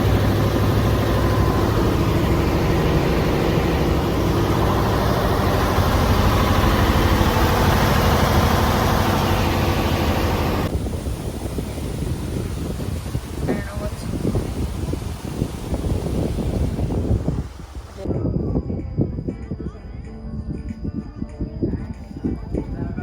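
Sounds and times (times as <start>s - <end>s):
boat engine humming: 0.0s - 18.1s.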